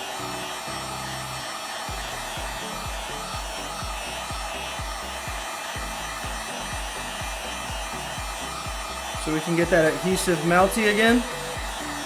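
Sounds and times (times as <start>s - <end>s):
heat gun blowing: 0.0s - 12.0s
background music with bass beat: 0.2s - 12.0s.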